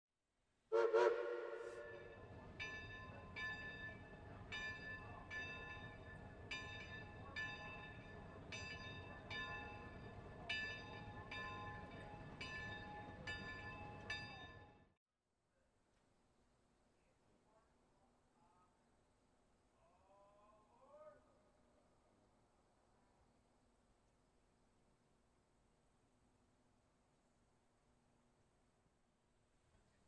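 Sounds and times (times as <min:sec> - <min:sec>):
locomotive bell ringing: 0:01.7 - 0:14.9.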